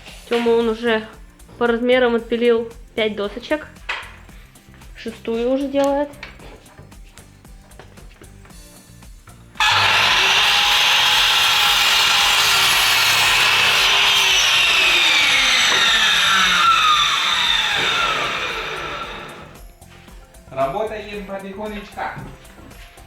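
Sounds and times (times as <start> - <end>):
power saw cutting wood: 9.6 - 19.6.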